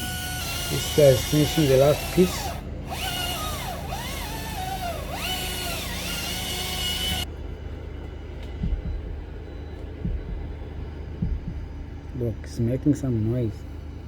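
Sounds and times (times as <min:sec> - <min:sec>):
chainsaw revving: 0:00.0 - 0:07.3
low engine rumble: 0:00.0 - 0:14.0
dull thumps: 0:08.4 - 0:12.0.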